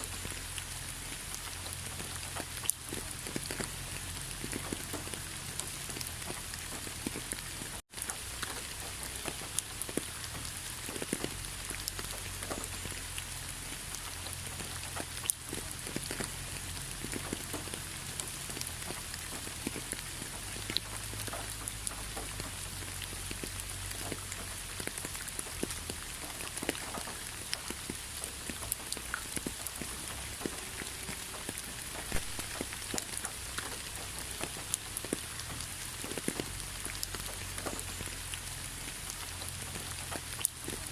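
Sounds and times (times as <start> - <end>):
rain pattering: 0.0 - 40.9.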